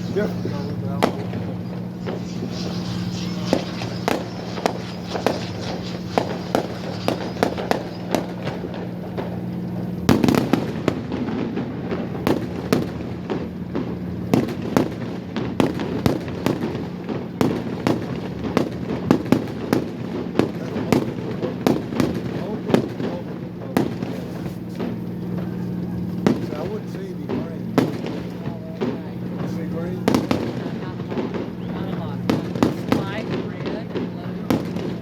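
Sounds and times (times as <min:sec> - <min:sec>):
steady low hum: 0:00.0 - 0:15.5
fireworks bangs and crackles: 0:00.0 - 0:35.0.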